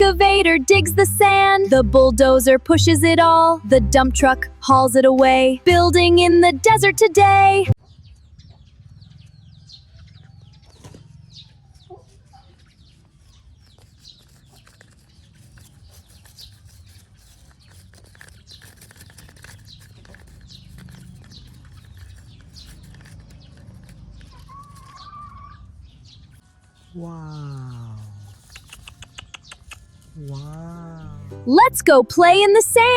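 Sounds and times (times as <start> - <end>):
high bird chirps: 27.3 - 31.3.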